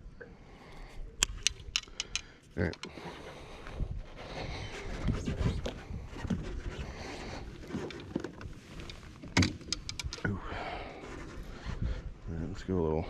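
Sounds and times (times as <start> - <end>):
fishing gear knocking and clicking: 1.2 - 3.1, 7.5 - 10.3.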